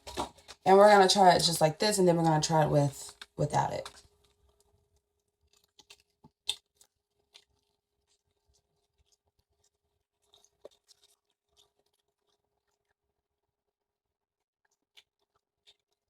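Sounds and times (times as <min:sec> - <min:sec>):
person chewing candy: 0:05.5 - 0:12.9, 0:14.6 - 0:16.0.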